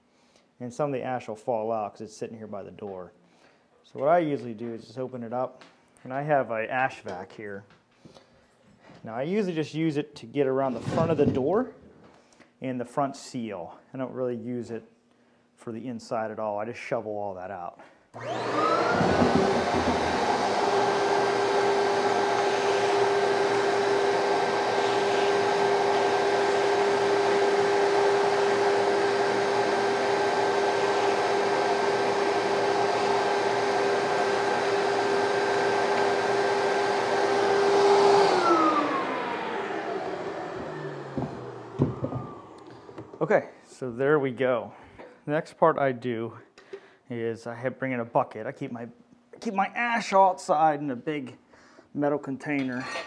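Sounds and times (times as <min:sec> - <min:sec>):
vacuum motor whine: 0:18.2 - 0:43.2.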